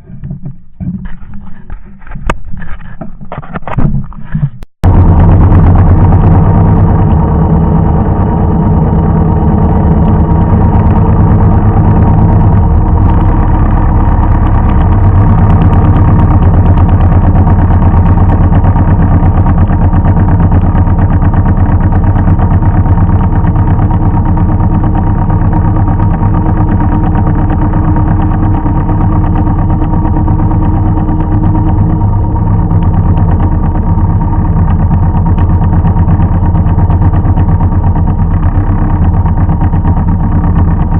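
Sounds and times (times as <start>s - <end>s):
farm machine engine running: 0.0s - 40.9s.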